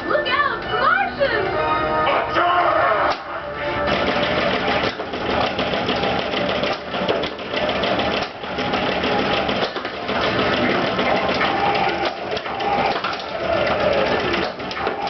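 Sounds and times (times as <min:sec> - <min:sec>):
faint electronic game sounds: 0:00.0 - 0:15.0
pinball machine clicking and rattling: 0:03.9 - 0:15.0.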